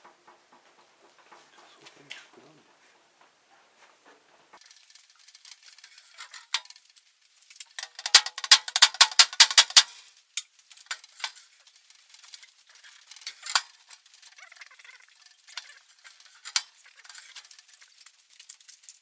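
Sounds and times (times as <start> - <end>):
faint rustling: 4.6 - 19.0
metal tool box clinking: 4.7 - 6.9, 7.5 - 19.0.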